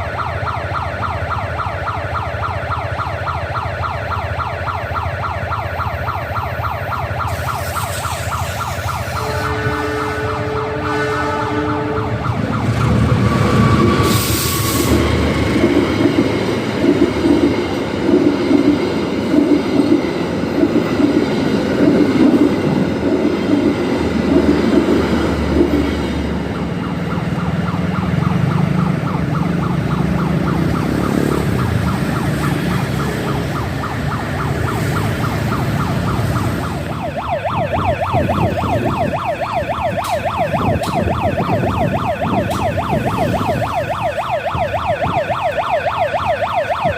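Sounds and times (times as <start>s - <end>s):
crossing warning siren wailing: 0.0s - 46.9s
train wheels clattering: 12.6s - 26.8s.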